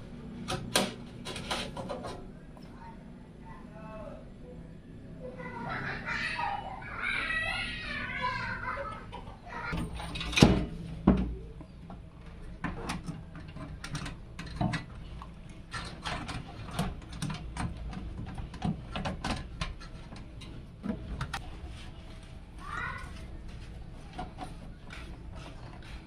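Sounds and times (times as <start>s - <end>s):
hard parts clicking and knocking: 9.7s - 21.4s.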